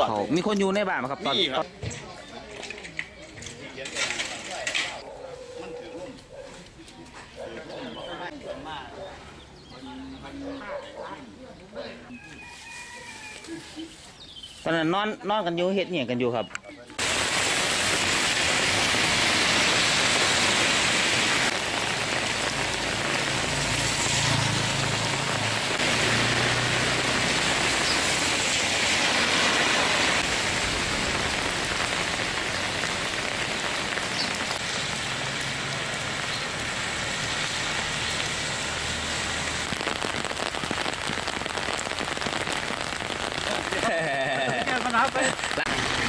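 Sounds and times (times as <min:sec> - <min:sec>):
heavy rain: 0:17.0 - 0:46.0.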